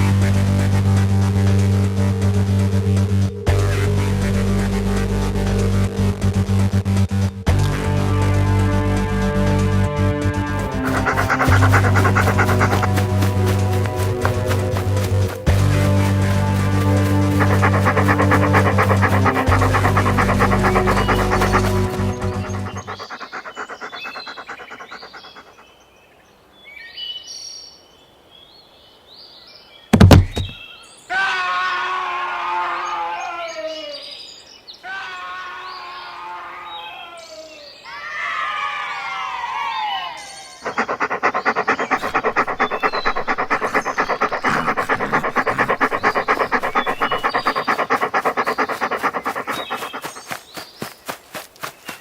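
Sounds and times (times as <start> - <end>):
rapid panting: 10.6 - 25.8, 30.0 - 30.6, 40.6 - 52.0
birds chirping: 10.6 - 26.2, 29.9 - 30.6, 40.6 - 52.0
loud double thump: 30.0 - 30.6.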